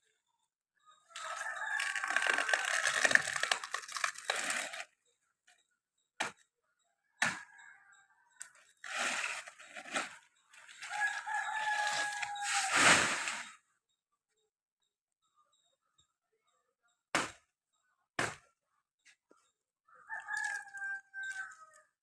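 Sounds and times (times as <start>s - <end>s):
rooster crowing: 1.1s - 2.6s, 10.9s - 13.3s, 19.9s - 21.9s.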